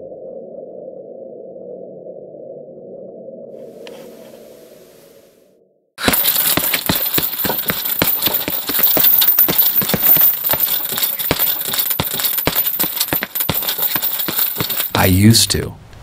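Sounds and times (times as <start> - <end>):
rapid clicking and rattling: 6.0 - 15.0.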